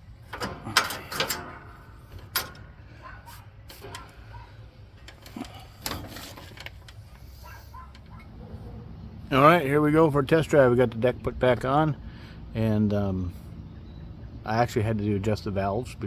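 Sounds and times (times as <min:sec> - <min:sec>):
metal clinks and knocks: 0:00.2 - 0:02.8.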